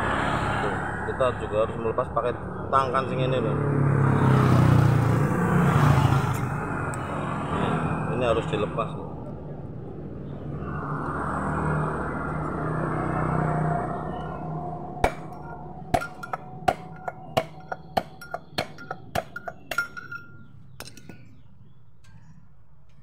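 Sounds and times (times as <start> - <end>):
hammer tapping on metal: 15.0 - 21.2.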